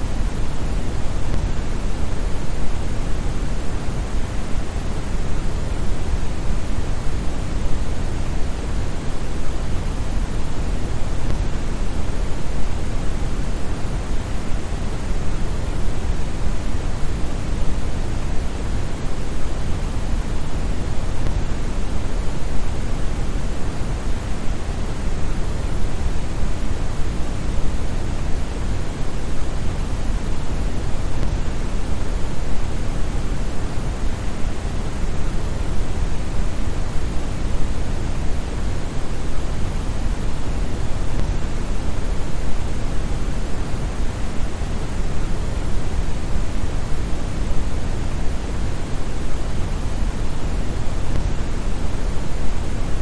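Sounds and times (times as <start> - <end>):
brown noise rushing hiss: 0.0 - 53.0.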